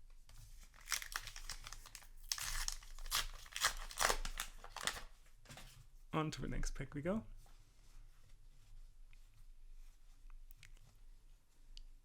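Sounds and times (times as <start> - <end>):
plastic wrapper crinkling: 0.5 - 5.1
plastic wrapper ripping: 0.6 - 5.1.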